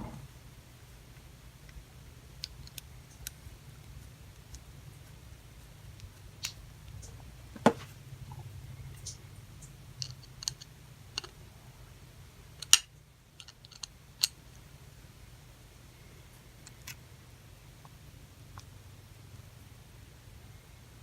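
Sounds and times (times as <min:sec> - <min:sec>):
faint low hum: 0:00.0 - 0:21.0
small clicks and taps of faucet parts: 0:10.0 - 0:11.4.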